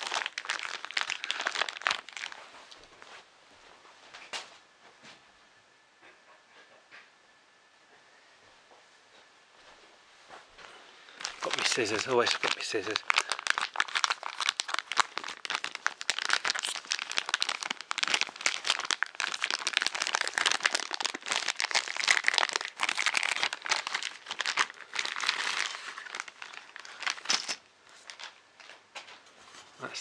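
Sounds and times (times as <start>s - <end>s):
plastic packaging crinkling: 0.0s - 2.9s, 11.1s - 28.8s.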